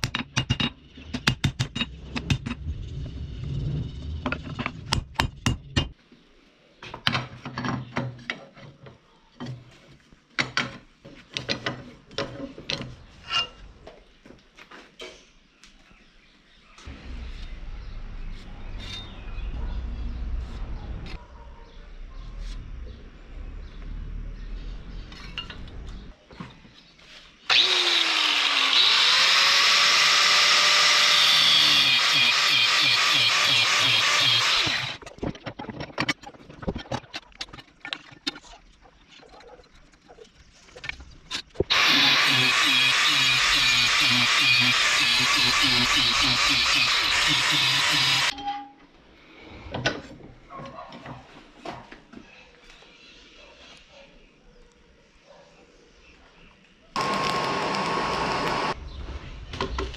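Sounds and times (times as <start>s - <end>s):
metal tools knocking and scraping: 10.4s - 13.7s
low hum: 16.9s - 21.2s
handheld power tool spinning: 27.5s - 35.0s, 41.7s - 48.3s, 57.0s - 58.8s.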